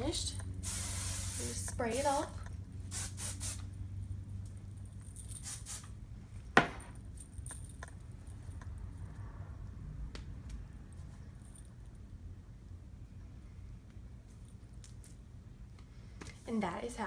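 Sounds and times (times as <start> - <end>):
hairspray spraying: 0.2 - 3.7, 5.2 - 6.0.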